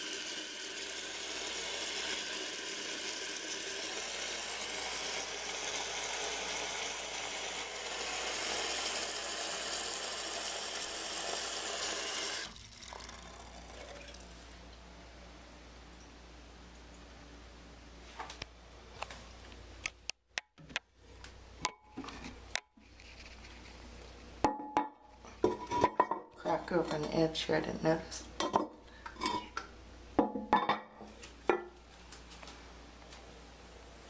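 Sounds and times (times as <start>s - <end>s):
toilet fill valve hissing: 0.0s - 14.5s.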